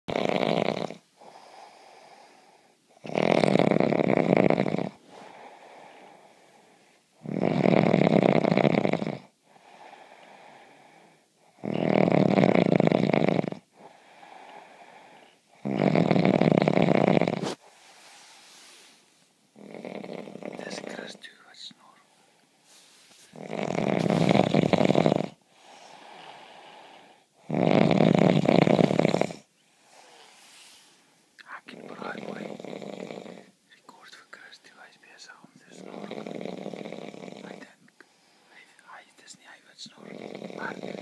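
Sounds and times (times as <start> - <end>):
man snoring heavily: 0.1 - 2.2, 3.0 - 5.8, 7.2 - 10.6, 11.6 - 17.6, 19.6 - 21.1, 23.3 - 30.2, 31.7 - 33.5, 35.7 - 37.7, 40.0 - 41.0
quiet breaths: 0.1 - 41.0.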